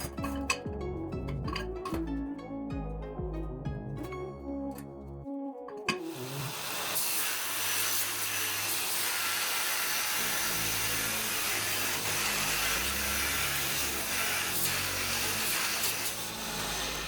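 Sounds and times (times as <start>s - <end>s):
background music: 0.0s - 17.0s
hissing machine noise: 5.9s - 17.0s.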